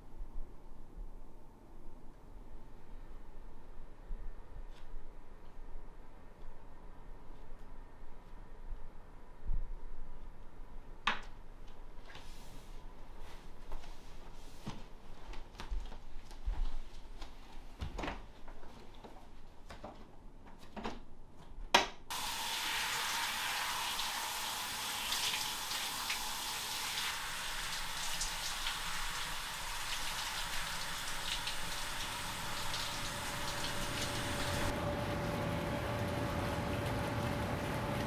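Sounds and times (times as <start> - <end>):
water running: 22.1 - 38.0.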